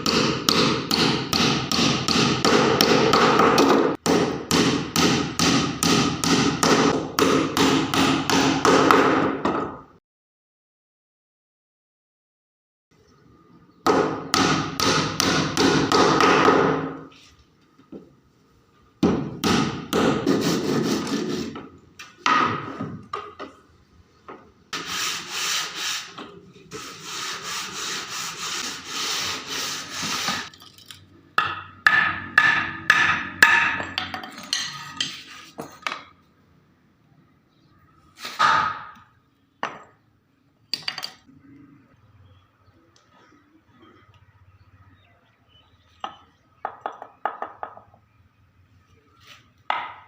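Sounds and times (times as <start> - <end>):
hand tool scraping wood: 20.2 - 21.6, 24.8 - 30.5.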